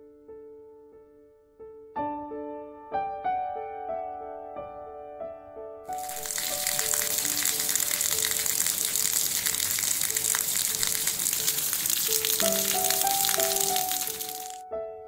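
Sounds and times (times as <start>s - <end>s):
soft piano music: 0.0s - 15.0s
heavy rain pouring: 6.0s - 14.6s.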